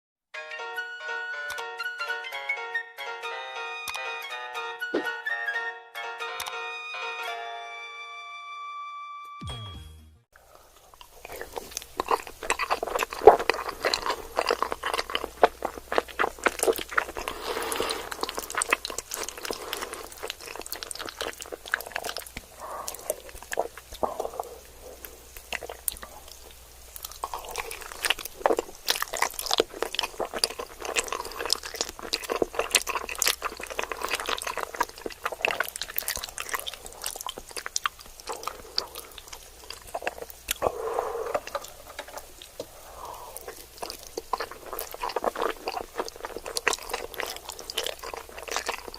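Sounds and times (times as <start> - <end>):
wet chewing and crunching: 10.7 - 48.9.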